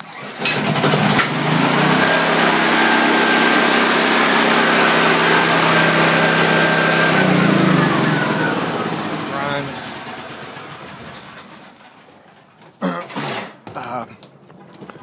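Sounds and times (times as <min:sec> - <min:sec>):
small generator engine running: 0:00.0 - 0:11.8.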